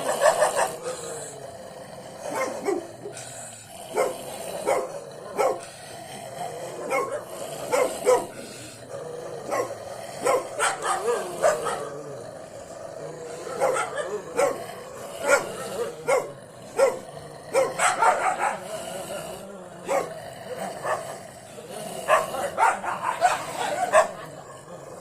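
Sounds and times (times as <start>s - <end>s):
dog barking: 0.0s - 1.1s, 2.2s - 3.0s, 3.9s - 5.7s, 6.8s - 8.4s, 9.4s - 12.0s, 13.3s - 18.7s, 19.8s - 21.2s, 22.0s - 24.7s.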